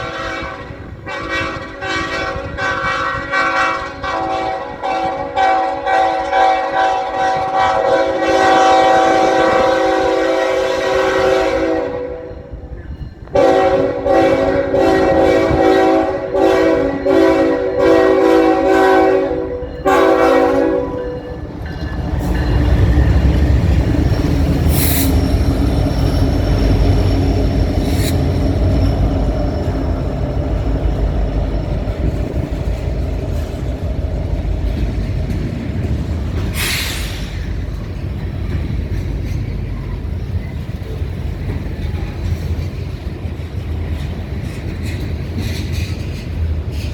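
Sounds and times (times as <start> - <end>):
locomotive air horn blasts: 0.0 - 12.6, 13.3 - 21.4
train rumbling past: 0.0 - 46.9.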